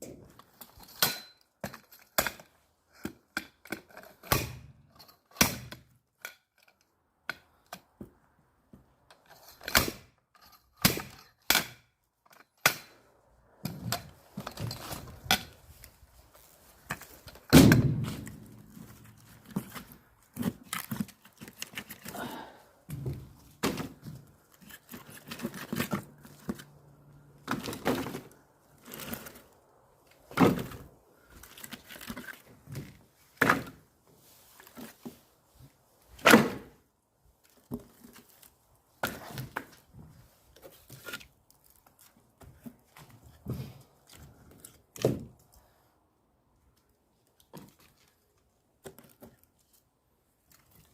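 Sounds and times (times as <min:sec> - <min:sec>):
axe chopping wood: 0:04.3 - 0:04.8, 0:10.8 - 0:11.8, 0:17.5 - 0:18.6, 0:36.2 - 0:36.7.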